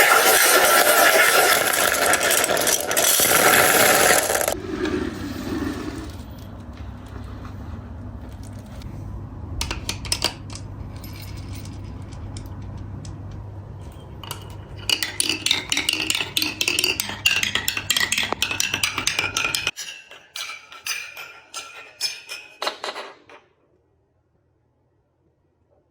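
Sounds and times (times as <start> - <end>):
marbles clattering: 0.0 - 4.6, 14.1 - 19.8
marbles rolling on a track: 0.0 - 6.2, 14.3 - 19.8.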